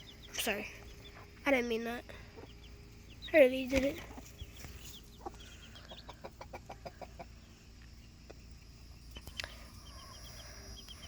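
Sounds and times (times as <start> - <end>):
chicks peeping: 0.0 - 11.0
hen clucking: 2.1 - 8.5.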